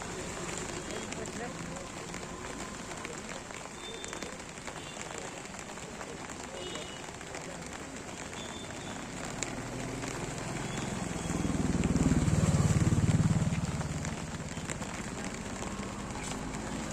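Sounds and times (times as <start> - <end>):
vehicle engine passing by: 9.7 - 16.8.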